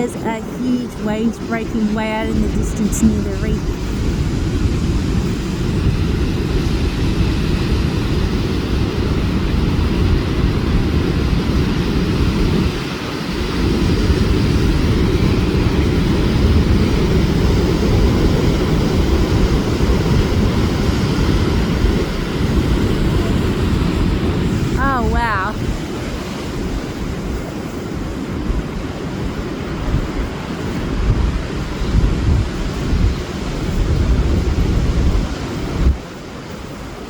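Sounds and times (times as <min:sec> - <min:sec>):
surf washing: 0:00.0 - 0:37.0
wind rumbling on microphone: 0:00.0 - 0:37.0.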